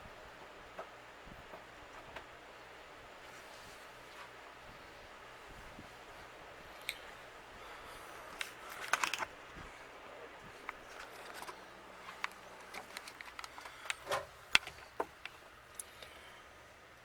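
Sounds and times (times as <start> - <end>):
small clicks of tools: 8.4 - 9.3.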